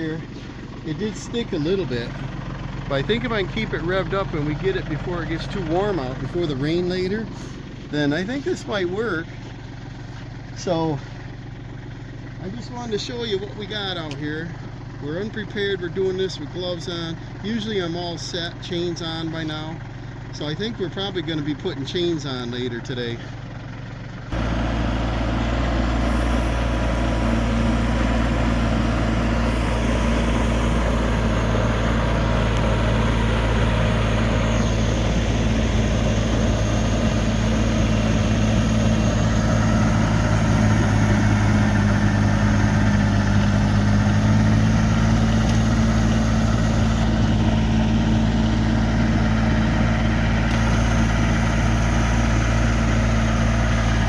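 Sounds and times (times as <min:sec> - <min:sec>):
snowblower engine running: 0:00.0 - 0:54.0.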